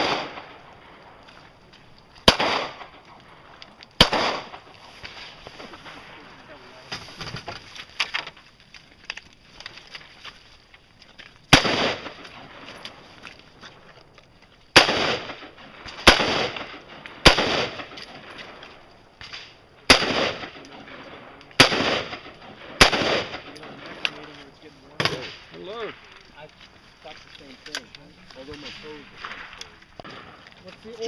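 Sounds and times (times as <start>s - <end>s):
gunshots with echo: 0.0s - 0.6s, 2.2s - 3.0s, 4.0s - 4.7s, 11.5s - 12.7s, 14.8s - 18.3s, 19.9s - 24.0s.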